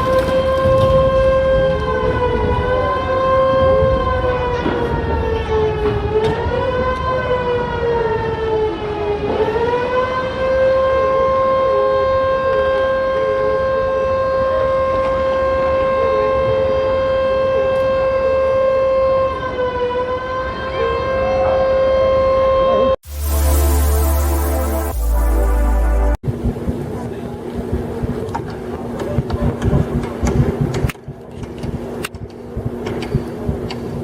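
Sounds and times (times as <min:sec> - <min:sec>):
horn long blast: 0:21.0 - 0:26.2.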